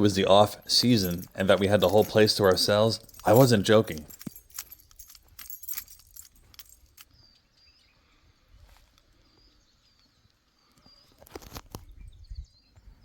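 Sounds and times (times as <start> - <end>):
faint bird chirps: 7.0 - 13.0.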